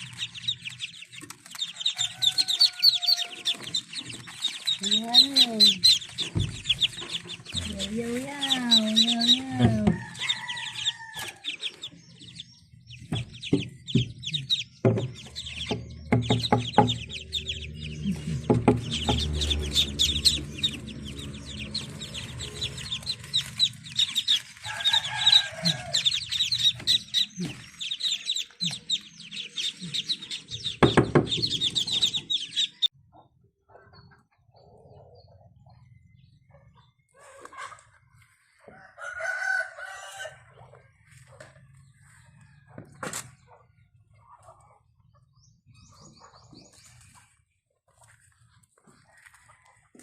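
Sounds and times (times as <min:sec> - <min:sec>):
ducklings peeping: 0:00.0 - 0:50.0
scattered knocks: 0:13.0 - 0:23.2, 0:30.6 - 0:32.3.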